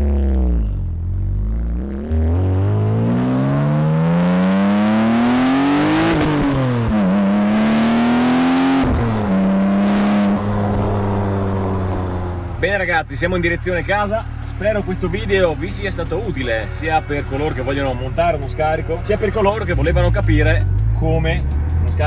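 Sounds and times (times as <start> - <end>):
sports car accelerating: 0.0 - 22.0.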